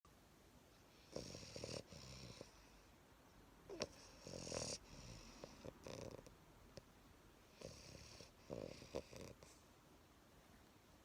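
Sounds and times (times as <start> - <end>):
dog snoring: 0.9 - 2.9, 3.7 - 6.3, 7.5 - 9.6.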